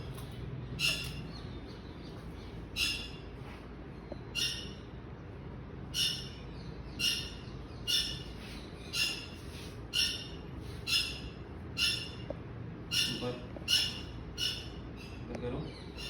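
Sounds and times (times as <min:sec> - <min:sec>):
bird chirping: 0:00.0 - 0:03.3, 0:04.0 - 0:04.9, 0:05.9 - 0:16.0
steady low background noise: 0:00.0 - 0:16.0.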